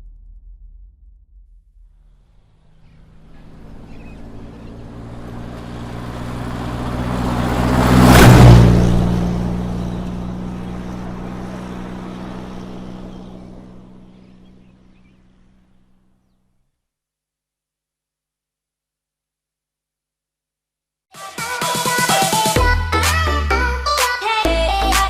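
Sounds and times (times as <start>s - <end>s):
bus driving past: 2.4s - 16.4s.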